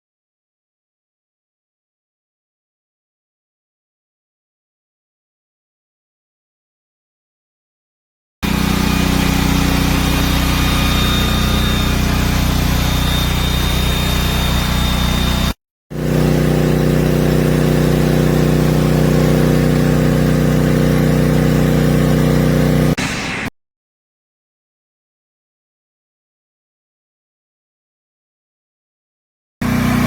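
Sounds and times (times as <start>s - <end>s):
generator engine running: 8.4s - 23.1s, 29.6s - 30.0s.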